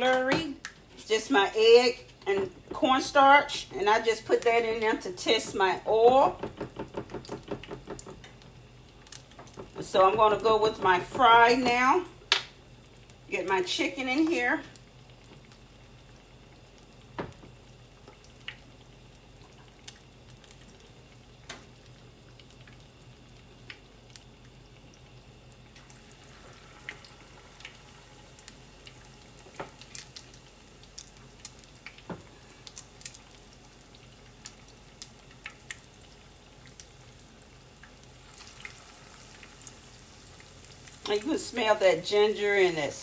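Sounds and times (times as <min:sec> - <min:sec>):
chicken frying in hot oil: 0:00.0 - 0:43.0
oil popping and crackling: 0:00.0 - 0:43.0
loud knocks: 0:06.3 - 0:08.2.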